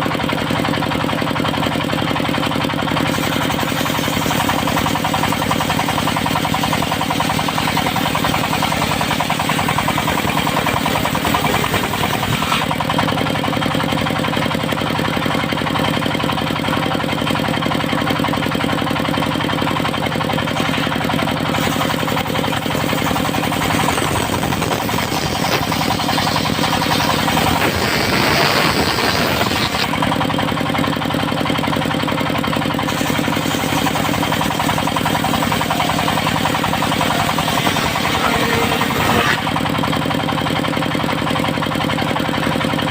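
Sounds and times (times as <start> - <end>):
diesel engine running: 0.0 - 42.9
loud hissing: 20.6 - 30.0.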